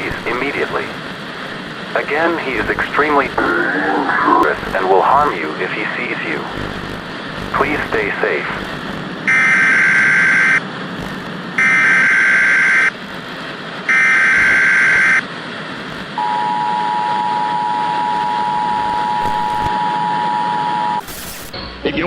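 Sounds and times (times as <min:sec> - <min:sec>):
constant hiss: 0:00.0 - 0:09.2
data bursts: 0:06.4 - 0:12.9.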